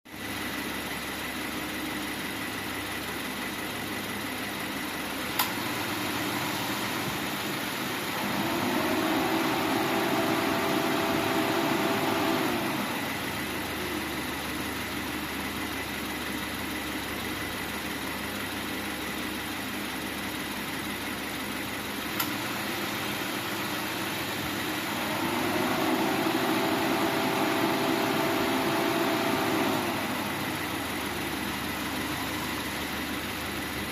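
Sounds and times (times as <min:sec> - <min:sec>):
car engine idling: 0:00.1 - 0:33.9
louder steady hum: 0:08.1 - 0:13.3, 0:24.4 - 0:32.6.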